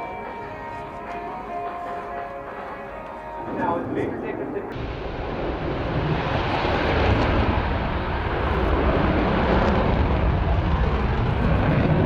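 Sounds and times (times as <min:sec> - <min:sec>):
jet rumble in flight: 0:03.4 - 0:12.0.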